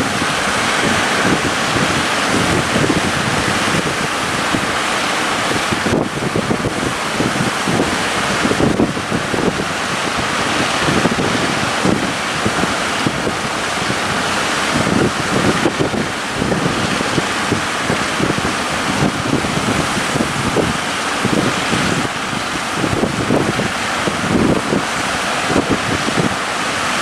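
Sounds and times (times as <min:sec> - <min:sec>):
rough sea and breaking waves: 0:00.0 - 0:27.0
wind buffeting microphone: 0:00.0 - 0:27.0.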